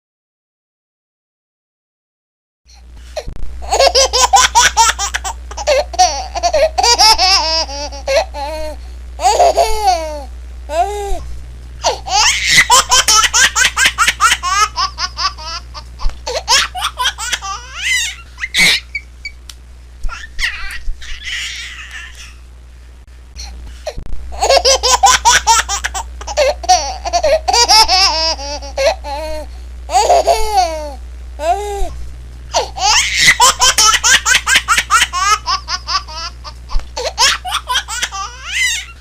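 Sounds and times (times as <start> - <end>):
small child laughing: 3.6 - 11.2, 11.8 - 19.1, 20.1 - 22.4, 24.4 - 32.0, 32.6 - 39.0.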